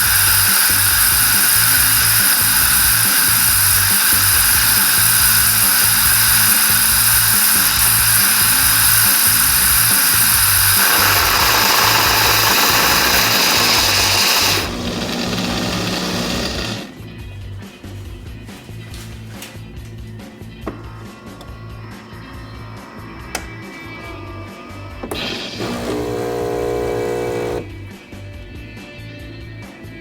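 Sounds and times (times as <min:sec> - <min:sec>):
espresso machine hissing and buzzing: 0:00.0 - 0:16.9, 0:25.1 - 0:27.7
background music: 0:00.0 - 0:30.0.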